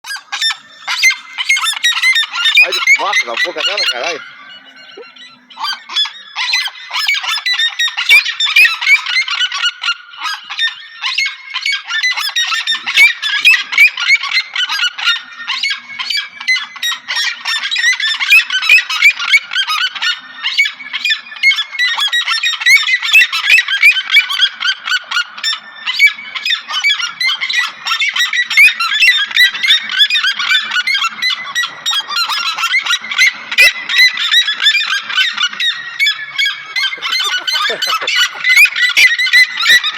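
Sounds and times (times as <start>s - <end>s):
birds calling in chorus: 0.0s - 39.9s.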